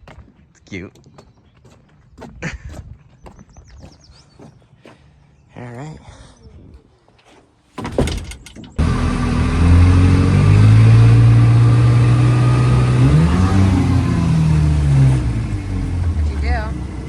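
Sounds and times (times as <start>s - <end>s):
knocks: 7.8s - 8.8s
outboard motor running: 8.8s - 17.0s.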